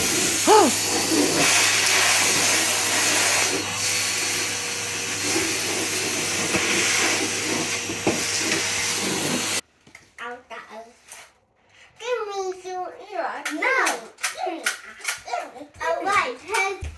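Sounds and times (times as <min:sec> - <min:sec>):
vacuum cleaner running: 0:00.0 - 0:09.6.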